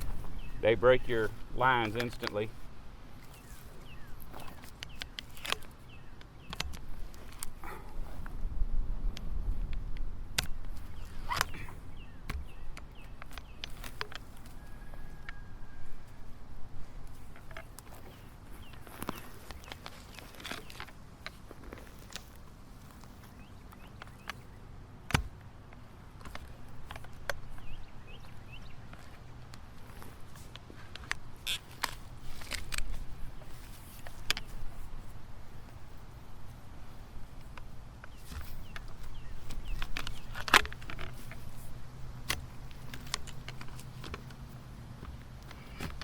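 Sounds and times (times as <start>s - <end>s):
bird chirping: 0.0s - 8.0s, 10.4s - 16.2s, 17.2s - 20.9s, 22.8s - 24.9s, 26.5s - 30.3s, 38.0s - 41.5s
footsteps through dry brush: 0.0s - 8.4s, 10.5s - 24.6s, 25.4s - 46.0s.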